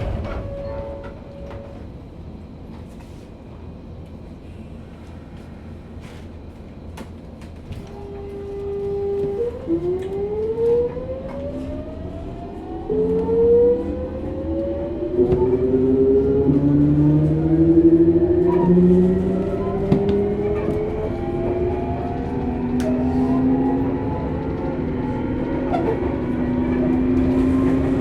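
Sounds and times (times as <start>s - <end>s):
traction motors whining rising in pitch: 8.6s - 28.0s.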